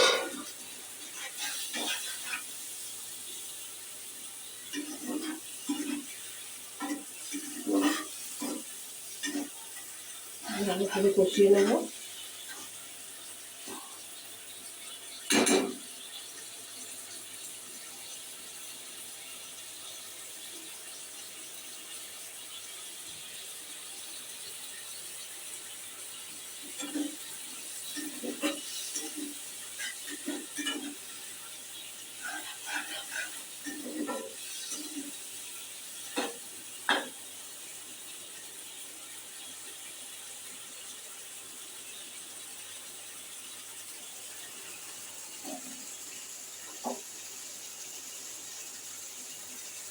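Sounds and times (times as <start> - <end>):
spatula scraping and clattering: 0.0 - 0.5, 27.9 - 31.0, 32.2 - 35.2
curry sizzling in a pan: 0.0 - 49.9.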